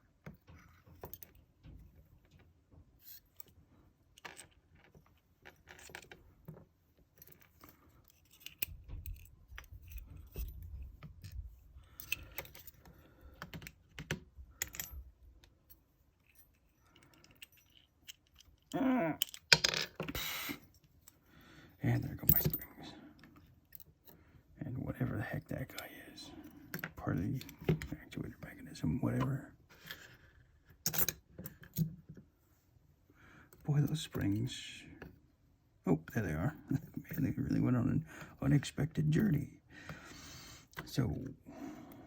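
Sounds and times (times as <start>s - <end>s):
metal lock parts clinking: 0.3s - 21.2s, 21.9s - 24.2s, 30.7s - 32.1s.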